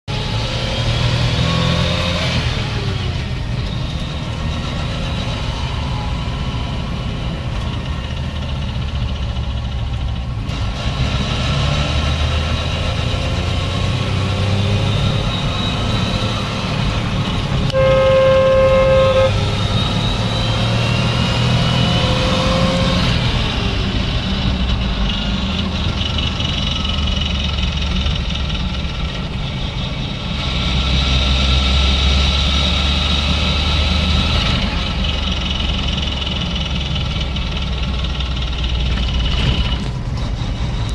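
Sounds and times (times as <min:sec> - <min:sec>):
vehicle engine rumble: 0:00.0 - 0:40.9
horn-like tone: 0:17.7 - 0:19.9
faint high whines: 0:17.7 - 0:20.5.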